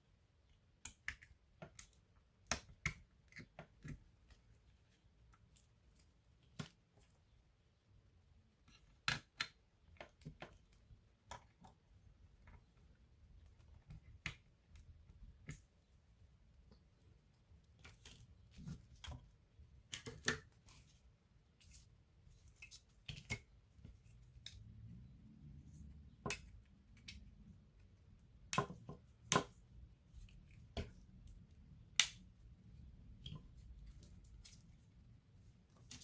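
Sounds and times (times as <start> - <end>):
small clicks and taps: 0.5 - 4.5, 25.8 - 32.4.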